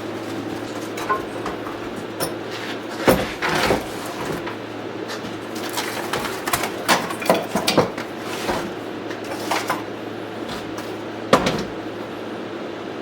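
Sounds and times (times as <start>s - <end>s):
steady low hum: 0.0s - 13.0s
hard objects clinking and knocking: 0.3s - 4.6s.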